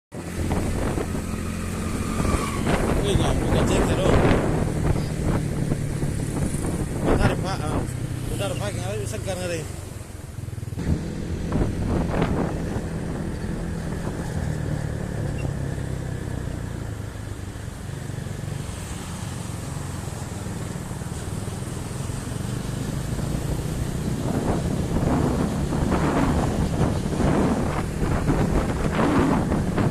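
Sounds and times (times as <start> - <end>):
noisy gusts: 0.2 - 8.5, 10.7 - 15.3, 22.8 - 29.9.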